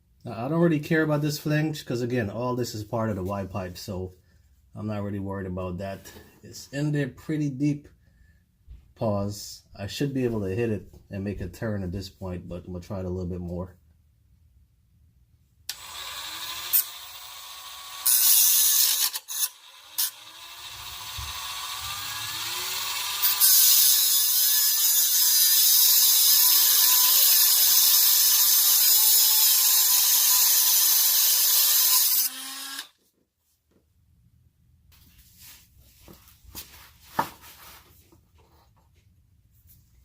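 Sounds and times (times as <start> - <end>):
rotary tool cutting metal: 15.7 - 32.9.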